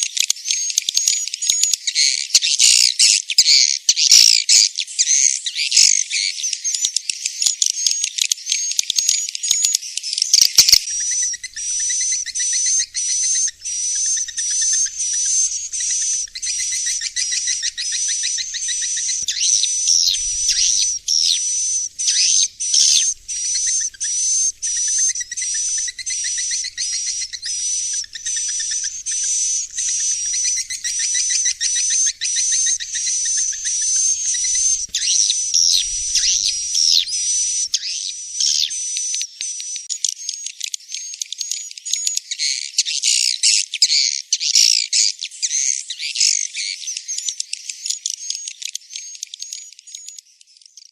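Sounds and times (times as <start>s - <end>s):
high twittering bird chirps: 0.1s - 39.6s
thin steady high whistle: 11.0s - 37.8s.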